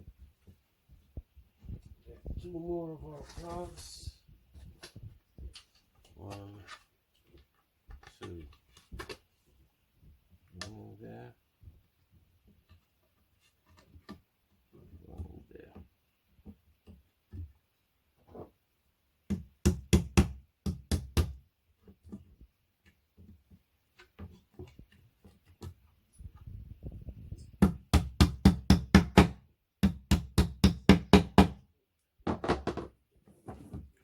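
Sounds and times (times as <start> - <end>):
hammer tapping wooden dowels: 19.3 - 21.4, 27.6 - 31.6.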